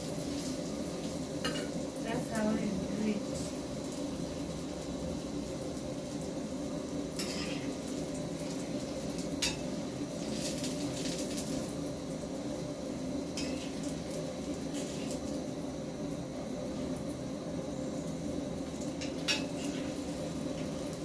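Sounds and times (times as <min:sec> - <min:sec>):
utensil scraping and clinking on pan: 0:07.2 - 0:07.7.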